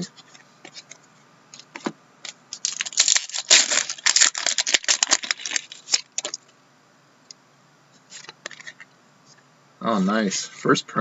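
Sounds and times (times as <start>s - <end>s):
foil wrapper crinkling and tearing: 2.5s - 6.4s.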